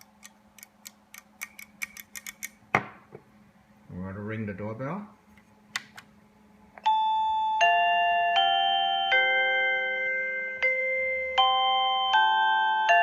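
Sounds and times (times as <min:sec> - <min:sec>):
electronic doorbell chime melody: 0:06.8 - 0:13.0.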